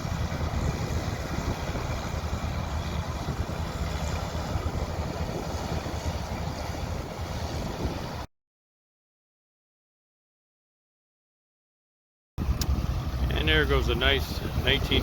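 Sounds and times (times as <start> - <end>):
harvest machinery engines running: 0.0 - 7.6, 12.4 - 15.0
wind buffeting microphone: 0.0 - 8.3, 12.4 - 15.0.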